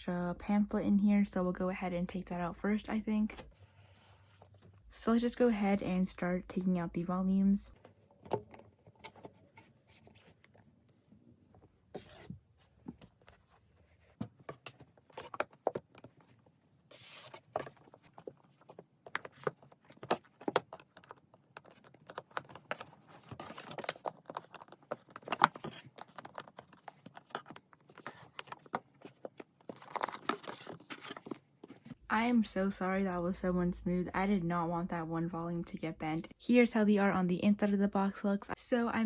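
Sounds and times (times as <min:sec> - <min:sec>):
books scraping against cardboard: 0:11.9 - 0:15.8, 0:16.9 - 0:20.6.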